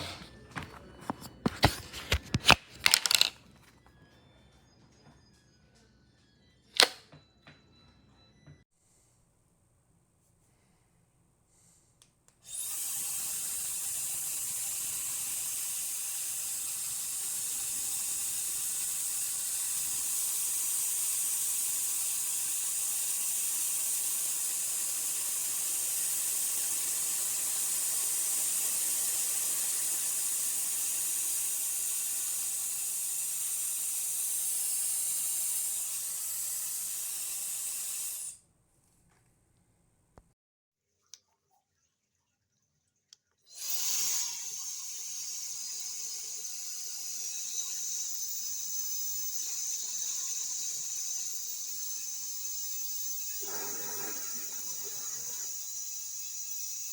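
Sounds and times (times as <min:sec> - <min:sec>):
hair dryer blowing: 0:12.5 - 0:38.4, 0:43.5 - 0:56.9.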